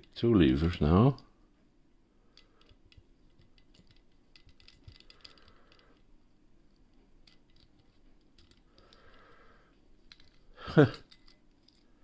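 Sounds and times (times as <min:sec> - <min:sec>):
lock picking clicks and scraping: 0:02.3 - 0:06.1, 0:07.2 - 0:09.2, 0:10.1 - 0:12.0.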